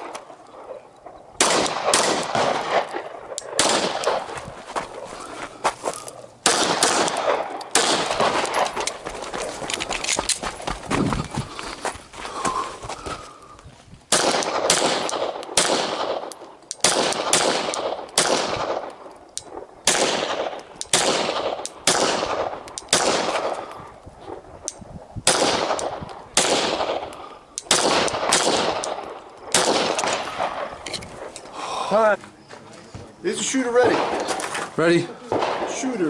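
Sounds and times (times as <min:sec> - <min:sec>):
rifle shots echoing: 0:00.0 - 0:04.4, 0:06.4 - 0:09.1, 0:14.1 - 0:24.5, 0:25.2 - 0:31.3, 0:33.5 - 0:36.0.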